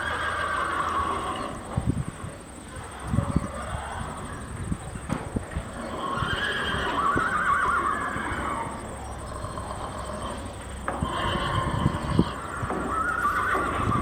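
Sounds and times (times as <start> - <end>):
horse whinnying: 0.0 - 1.6, 5.7 - 8.8, 10.2 - 14.0.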